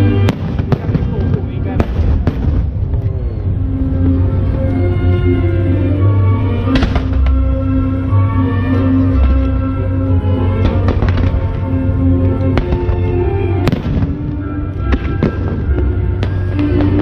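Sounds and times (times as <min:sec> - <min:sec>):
fireworks bursting with sharp cracks: 0:00.0 - 0:03.3, 0:06.7 - 0:07.5, 0:10.6 - 0:11.7, 0:12.4 - 0:17.0.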